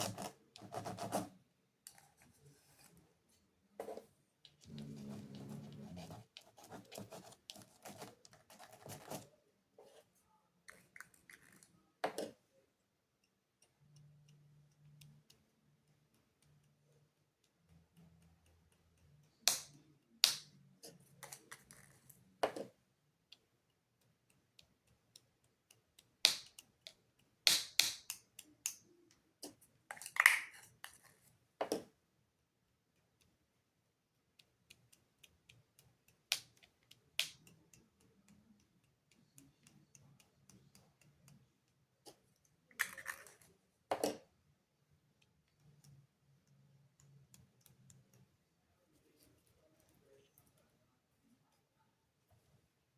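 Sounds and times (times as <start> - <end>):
faint low hum: 0.0 - 11.0.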